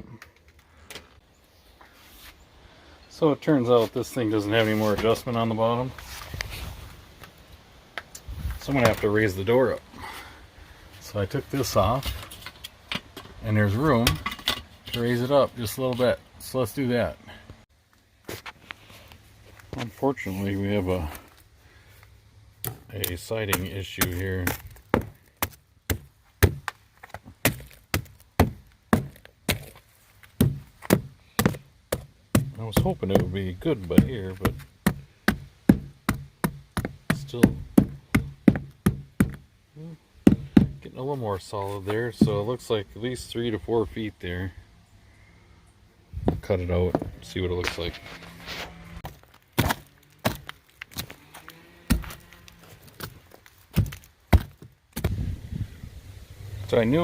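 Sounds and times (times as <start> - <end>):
tool knocking on wood: 34.0 - 39.4.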